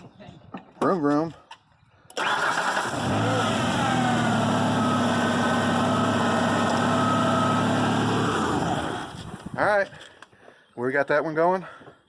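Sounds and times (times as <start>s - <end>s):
truck engine idling: 2.2s - 9.1s.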